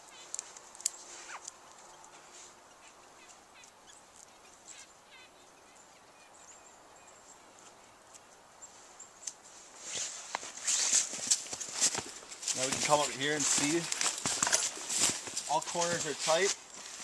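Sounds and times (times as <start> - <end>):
rustling: 0.0 - 2.6, 8.7 - 17.0
faint bird chirps: 1.2 - 9.3
footsteps: 8.8 - 17.0.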